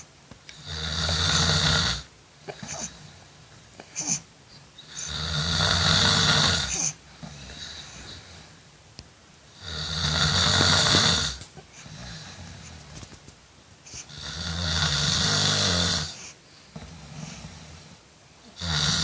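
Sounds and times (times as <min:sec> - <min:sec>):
quiet breathing: 0:00.0 - 0:19.0
person snoring: 0:00.5 - 0:03.2, 0:04.8 - 0:08.5, 0:09.5 - 0:12.8, 0:14.0 - 0:19.0.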